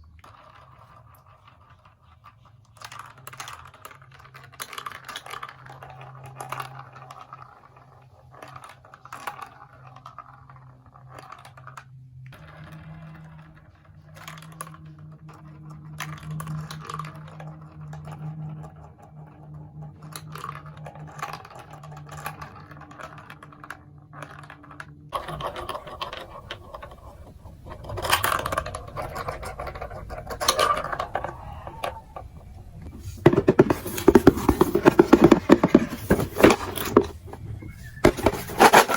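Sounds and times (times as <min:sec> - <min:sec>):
rapid plastic rattle: 0:20.0 - 0:38.9
plastic pieces clicking: 0:38.0 - 0:38.9.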